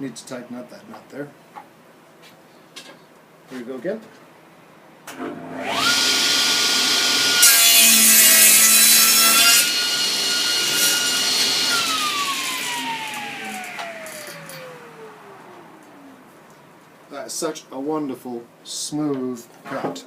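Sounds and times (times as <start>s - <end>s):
table saw motor whining: 5.2s - 16.3s
saw blade cutting wood: 5.6s - 15.8s.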